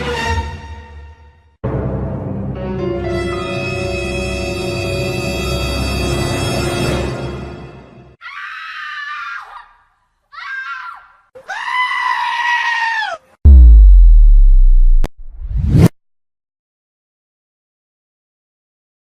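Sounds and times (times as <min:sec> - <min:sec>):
music: 0:00.0 - 0:08.2
goat screaming: 0:10.4 - 0:13.3
deep bass boom with falling sweep: 0:13.5 - 0:15.9.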